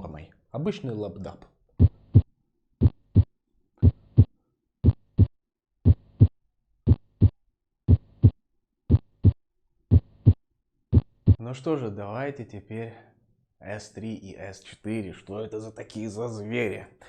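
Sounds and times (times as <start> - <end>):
heartbeat through a stethoscope: 1.8 - 6.3, 6.9 - 11.4.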